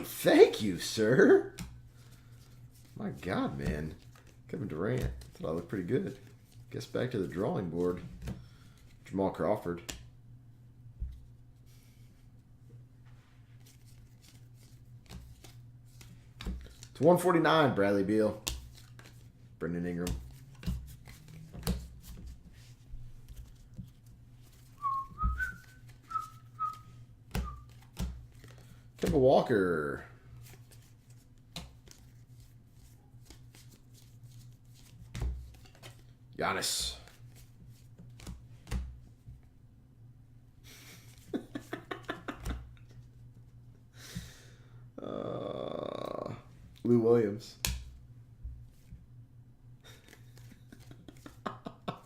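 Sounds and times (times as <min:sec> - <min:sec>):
cards being handled: 0:00.4 - 0:10.1, 0:13.6 - 0:17.0, 0:17.8 - 0:29.6, 0:30.3 - 0:39.0, 0:40.9 - 0:43.5, 0:49.8 - 0:52.0
cards clicking: 0:18.3 - 0:19.2, 0:49.9 - 0:52.0
person whistling a tune: 0:24.8 - 0:27.6.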